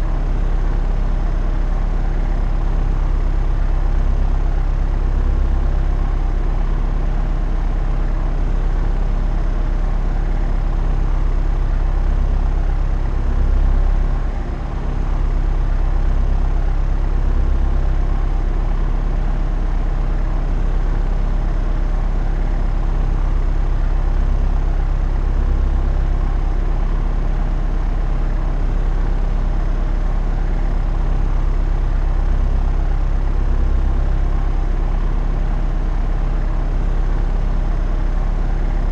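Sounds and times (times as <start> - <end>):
propeller aircraft drone: 0.0 - 38.9.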